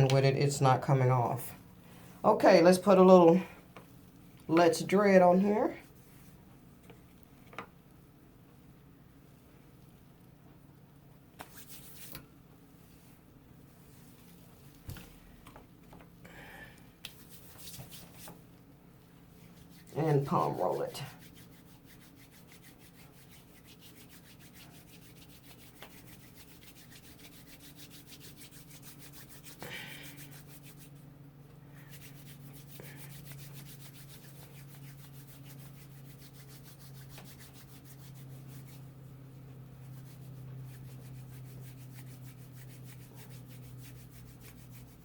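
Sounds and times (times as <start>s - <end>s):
palms rubbing hair: 2.2s - 7.6s, 11.4s - 15.2s, 17.0s - 31.1s, 31.8s - 45.0s.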